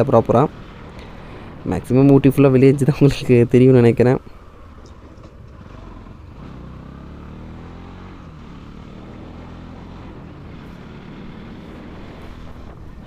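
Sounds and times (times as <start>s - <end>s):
motorcycle engine running: 4.4s - 13.0s.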